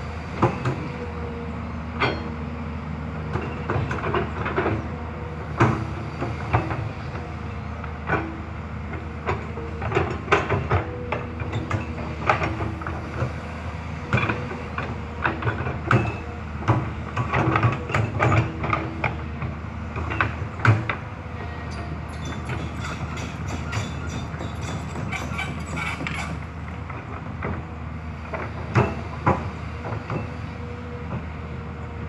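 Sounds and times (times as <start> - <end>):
excavator engine running: 0.0 - 32.0
metal clanks and knocks: 21.7 - 27.7, 28.3 - 30.4.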